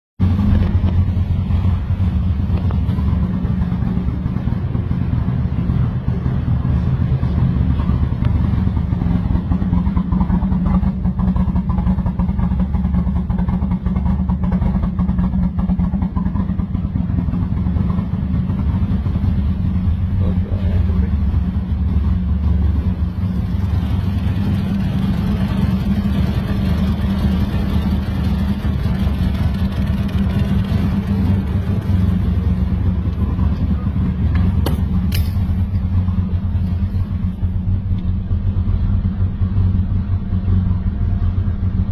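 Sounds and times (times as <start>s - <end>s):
car engine idling roughly: 0.2s - 41.9s.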